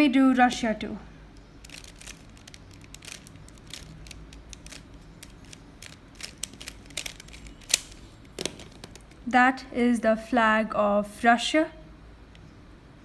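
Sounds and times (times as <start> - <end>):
puzzle cube clicking and rattling: 1.4 - 9.3.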